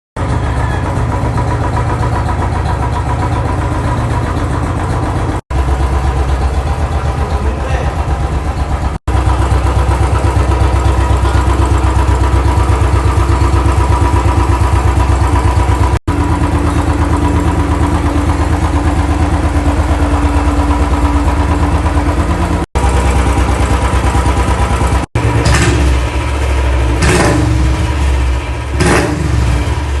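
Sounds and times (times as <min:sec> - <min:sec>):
motorcycle engine idling: 0:00.2 - 0:30.0
engine revving blips: 0:25.0 - 0:30.0.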